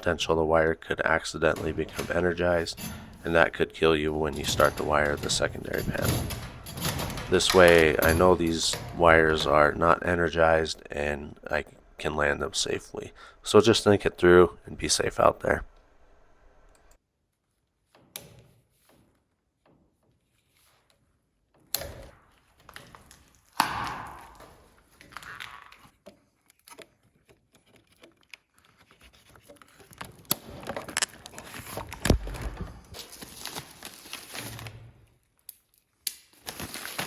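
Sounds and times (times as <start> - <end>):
clicks and thunks: 1.3 - 12.7, 29.4 - 33.1
knocking and clicking: 1.3 - 12.7.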